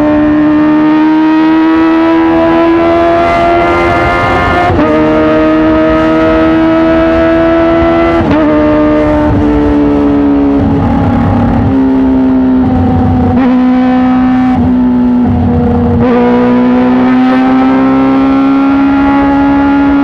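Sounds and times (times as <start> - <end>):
motorcycle engine at high revs: 0.0 - 20.0.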